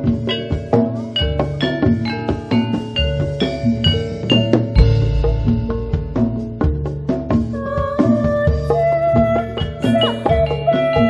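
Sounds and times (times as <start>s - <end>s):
gamelan metallophones ringing: 0.2s - 7.2s
low drum beats: 4.7s - 8.6s.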